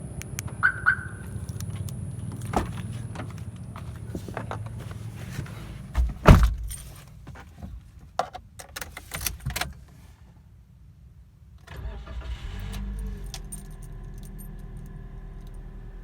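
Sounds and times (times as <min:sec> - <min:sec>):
heavy thump: 0:02.3 - 0:06.9
keys jangling: 0:12.9 - 0:14.9.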